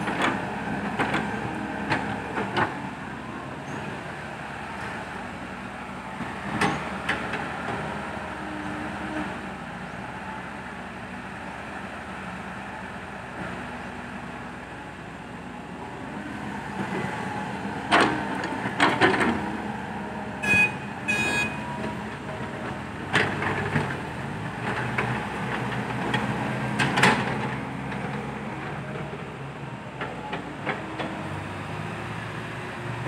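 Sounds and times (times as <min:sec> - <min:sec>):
diesel truck engines running: 0:00.0 - 0:33.0
short high beeps: 0:20.4 - 0:21.6.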